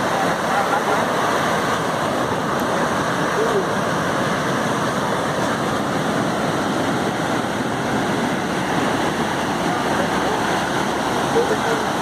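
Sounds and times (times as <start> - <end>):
ocean surf breaking: 0.0 - 12.0.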